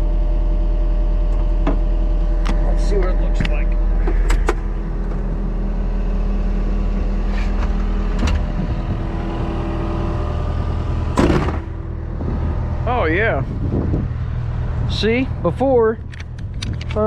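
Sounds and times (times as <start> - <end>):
diesel engine idling: 0.0 - 17.0
loud knock: 11.2 - 11.8.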